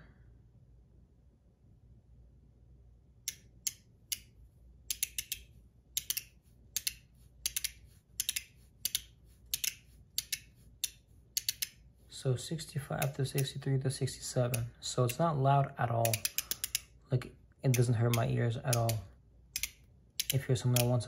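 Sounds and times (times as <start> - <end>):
metal fidget clicks: 4.9 - 11.8, 16.0 - 16.9, 19.6 - 21.0.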